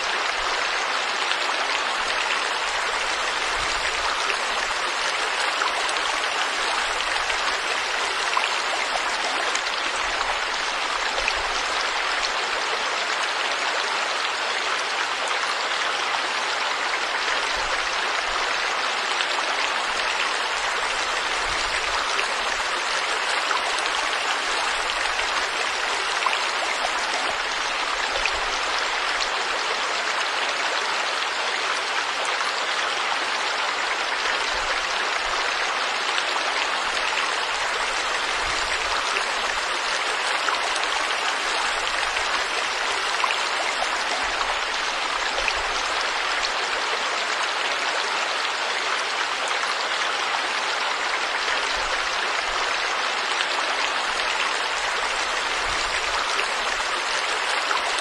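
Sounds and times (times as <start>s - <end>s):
stream water over rocks: 0.0s - 58.0s.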